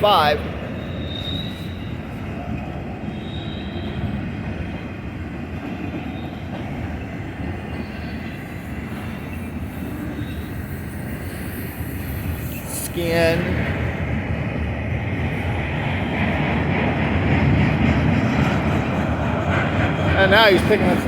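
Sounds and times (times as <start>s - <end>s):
train wheels rumbling on rails: 0.0s - 21.0s
high wheel squeals: 0.7s - 4.2s, 7.7s - 13.0s.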